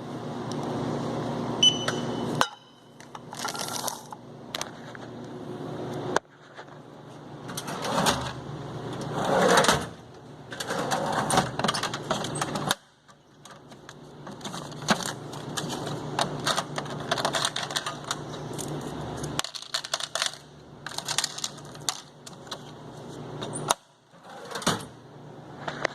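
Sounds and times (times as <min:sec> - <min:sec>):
coins clinking: 0:03.3 - 0:04.2
cash register keys clicking: 0:14.5 - 0:22.1.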